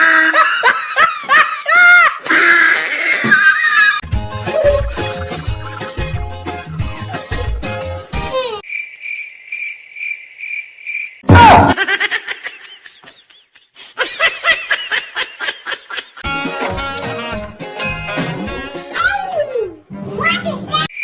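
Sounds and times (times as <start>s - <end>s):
music: 4.0s - 8.4s, 16.2s - 20.9s
cartoon crickets chirping: 8.6s - 11.3s.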